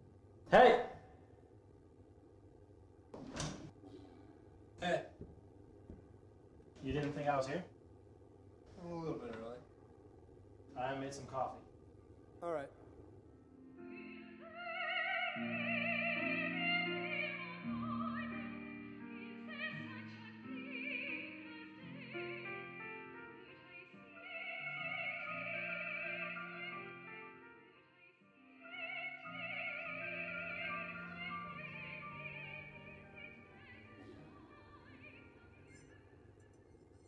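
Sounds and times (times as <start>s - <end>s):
operatic singing with vibrato: 27.7s - 36.0s.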